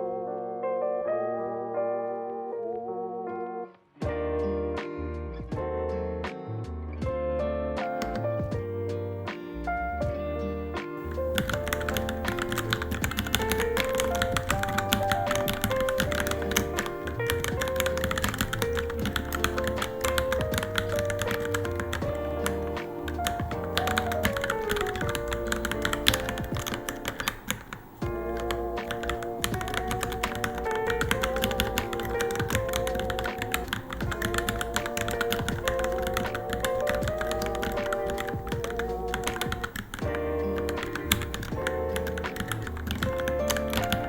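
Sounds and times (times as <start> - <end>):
background music: 0.0 - 44.0
rapid mechanical keyboard typing: 8.0 - 8.4, 11.1 - 44.0.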